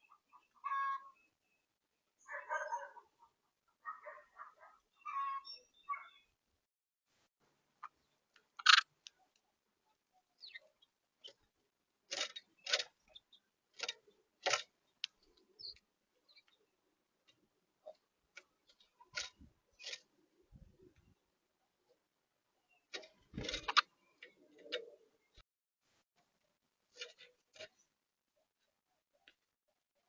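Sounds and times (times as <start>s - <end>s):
high bird chirps: 4.9s - 6.4s, 10.4s - 11.5s
birds pecking on feeder: 11.2s - 15.8s.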